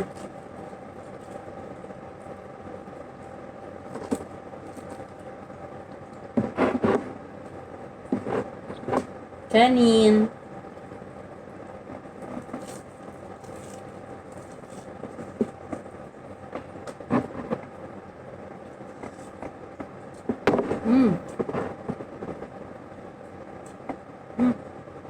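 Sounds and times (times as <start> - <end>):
steady background hum: 0.0 - 25.0
hummed mouth sound: 20.7 - 21.4, 24.4 - 24.7.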